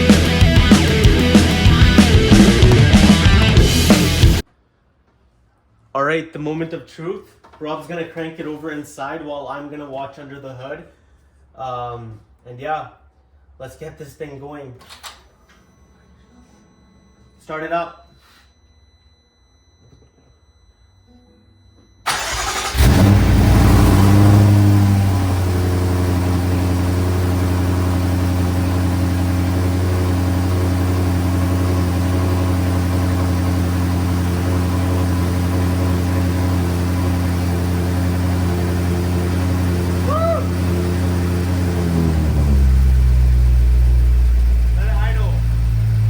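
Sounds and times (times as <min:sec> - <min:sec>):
car engine starting and idling: 0:00.0 - 0:04.4, 0:22.0 - 0:46.0.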